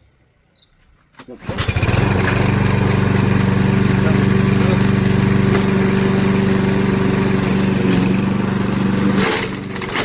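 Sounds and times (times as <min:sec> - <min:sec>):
lawn mower engine running: 0:01.4 - 0:10.0.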